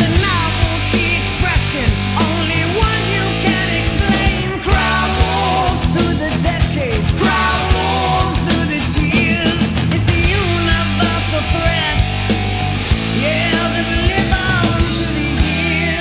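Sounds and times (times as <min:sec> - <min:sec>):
loud rock music: 0:00.0 - 0:16.0.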